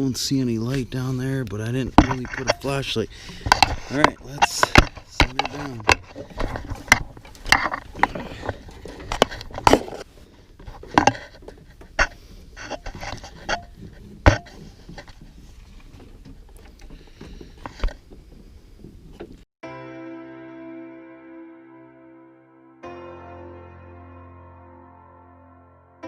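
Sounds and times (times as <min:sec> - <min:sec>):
tools knocking and scraping: 0:01.9 - 0:16.5.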